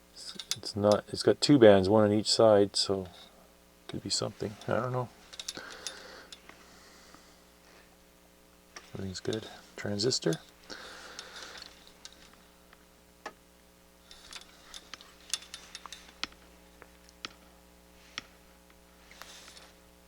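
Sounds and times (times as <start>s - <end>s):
low electrical hum: 0.0s - 20.0s
light clicks and taps: 8.8s - 9.6s.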